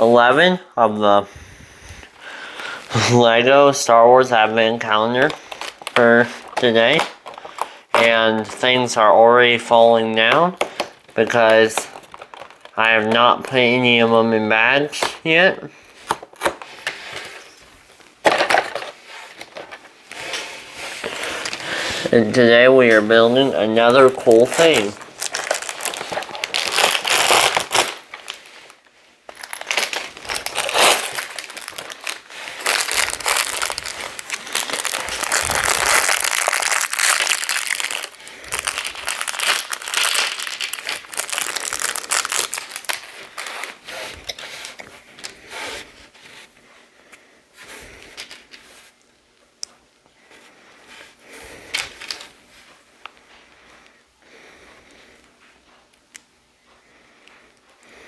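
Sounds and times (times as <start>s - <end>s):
packaging crinkling: 4.6s - 8.6s, 10.2s - 13.6s, 22.9s - 45.5s, 51.6s - 52.4s.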